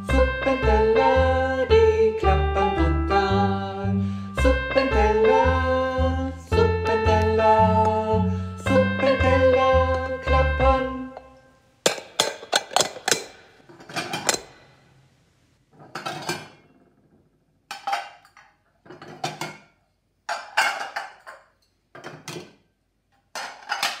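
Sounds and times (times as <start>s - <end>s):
hard objects clattering and clinking: 11.8s - 14.6s, 15.7s - 24.0s.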